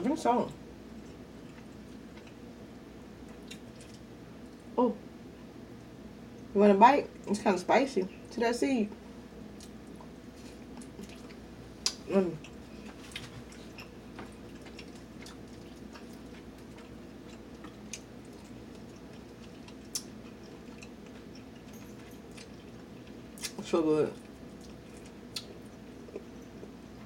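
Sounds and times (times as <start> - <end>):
person chewing food: 0.9 - 2.6, 3.2 - 4.7, 9.5 - 23.6, 24.2 - 27.0.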